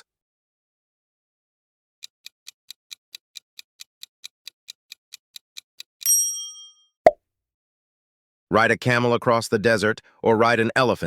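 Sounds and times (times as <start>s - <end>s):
rapid clock ticks: 2.0s - 6.1s.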